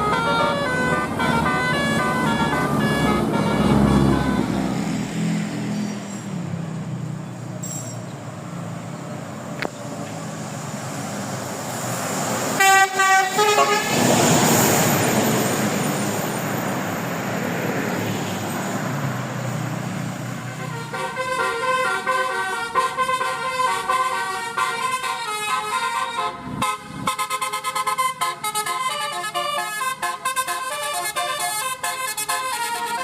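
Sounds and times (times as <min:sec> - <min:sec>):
musical bus horn: 0:00.0 - 0:05.0, 0:12.6 - 0:14.9, 0:20.4 - 0:33.0
bus passing with engine noise: 0:00.0 - 0:33.0.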